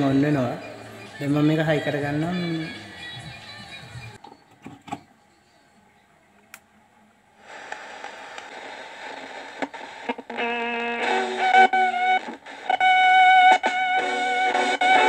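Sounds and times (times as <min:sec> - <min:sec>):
radio static hiss: 0:07.4 - 0:15.0.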